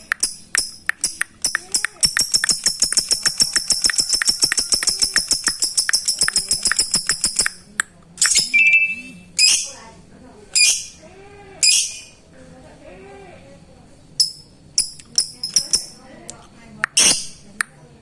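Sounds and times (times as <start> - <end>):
bird ticking chirps: 0.0 - 9.7, 14.2 - 16.0, 16.8 - 17.4.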